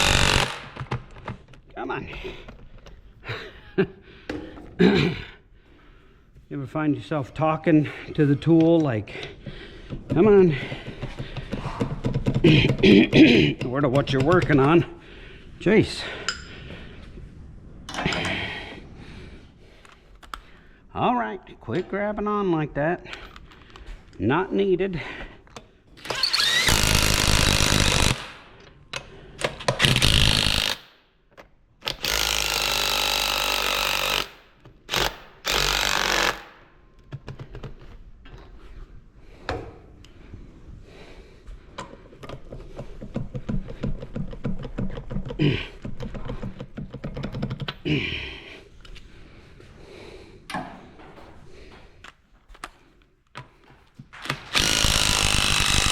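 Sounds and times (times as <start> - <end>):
power tool bursts: 0.0 - 0.8, 26.0 - 28.4, 29.8 - 30.8, 31.9 - 36.5, 54.3 - 55.9
hand tools clicking and clattering: 41.8 - 47.9, 50.5 - 55.9.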